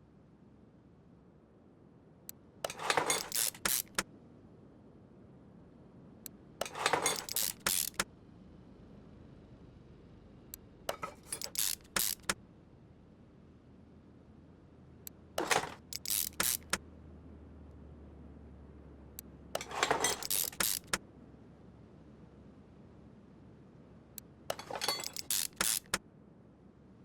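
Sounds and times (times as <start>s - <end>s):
hard objects clinking and rattling: 2.7s - 4.0s, 6.6s - 8.0s, 10.9s - 12.3s, 15.4s - 16.8s, 19.6s - 21.0s, 24.5s - 26.0s.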